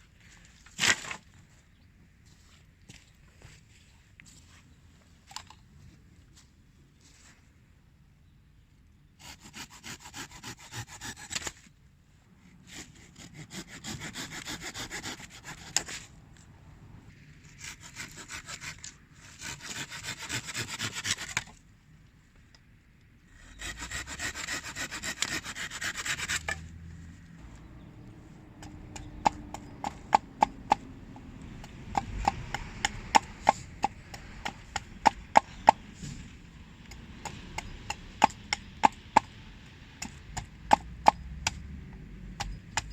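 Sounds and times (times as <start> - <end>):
hand saw cutting wood: 9.2 - 11.7, 12.6 - 16.2, 17.5 - 21.6, 23.4 - 26.8, 28.6 - 30.8, 31.6 - 36.2.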